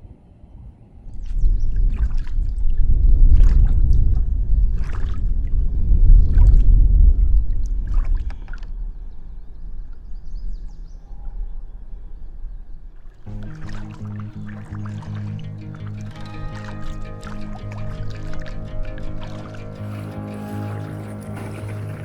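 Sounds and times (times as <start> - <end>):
paddle splashing in water: 4.8 - 5.3, 13.3 - 22.0.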